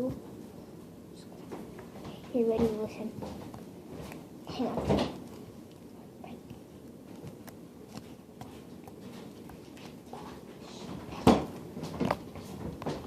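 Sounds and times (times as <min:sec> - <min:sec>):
slime squishing with crackling clicks: 0:03.4 - 0:10.1.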